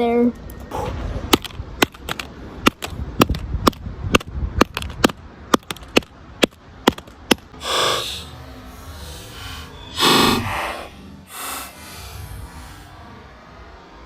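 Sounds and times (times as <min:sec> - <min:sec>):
hammer striking a phone: 0:01.3 - 0:07.5.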